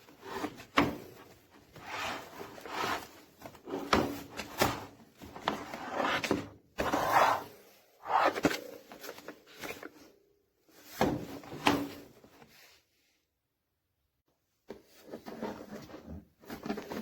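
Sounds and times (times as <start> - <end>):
folding stool scraping and clicking: 0.1 - 9.9.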